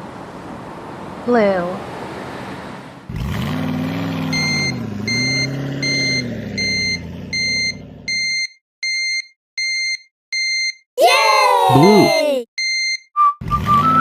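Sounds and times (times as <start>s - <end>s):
reversing alarm beeping: 4.3s - 10.8s, 12.6s - 14.0s.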